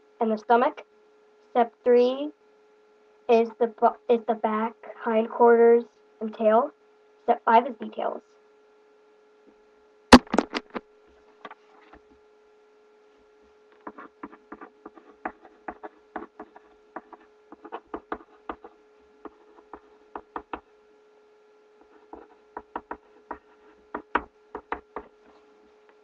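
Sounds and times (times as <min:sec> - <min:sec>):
faint electrical hum: 0:00.0 - 0:26.0
pencil tapping on paper: 0:13.8 - 0:20.7, 0:21.8 - 0:25.2.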